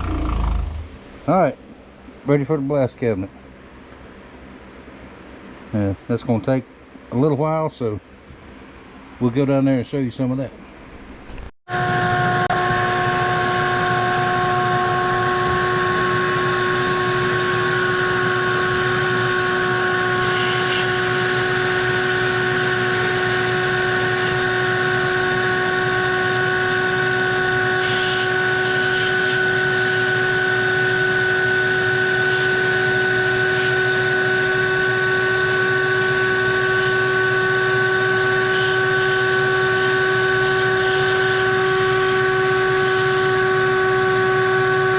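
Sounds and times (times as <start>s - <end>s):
motor whine: 0.0s - 1.3s, 11.2s - 44.9s.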